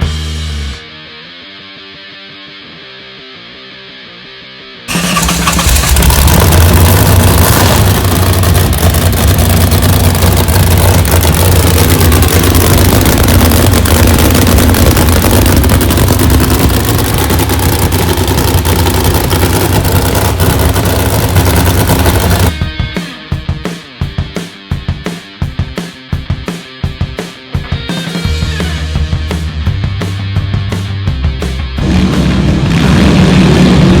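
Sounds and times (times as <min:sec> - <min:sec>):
loud motorcycle engine: 0:04.9 - 0:22.7, 0:31.2 - 0:34.0.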